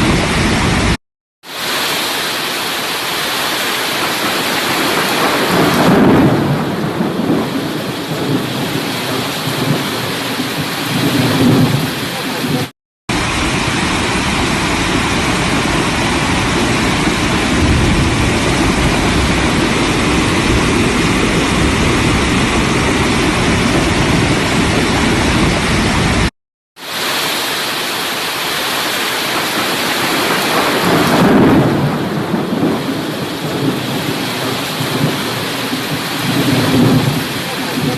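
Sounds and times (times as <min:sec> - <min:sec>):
heavy rain pouring: 0:00.0 - 0:37.9
low rumbles of thunder: 0:04.9 - 0:26.3, 0:30.6 - 0:37.9.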